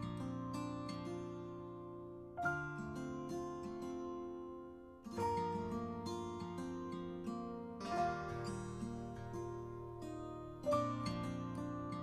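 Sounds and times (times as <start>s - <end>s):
gentle plucked string music: 0.0s - 12.0s.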